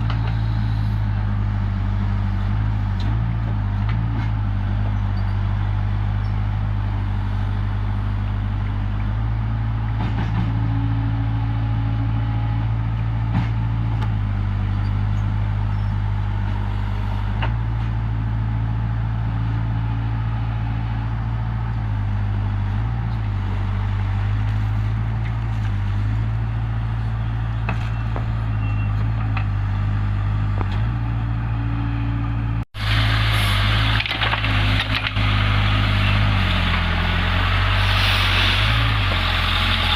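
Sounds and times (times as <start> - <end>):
hissy engine noise: 0.0 - 3.3, 23.4 - 39.9
diesel machinery running: 0.0 - 39.9.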